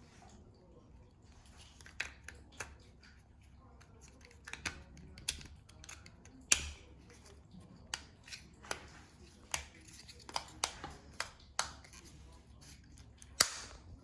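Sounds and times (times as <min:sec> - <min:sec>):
plastic switch parts clicking: 0:04.4 - 0:06.9.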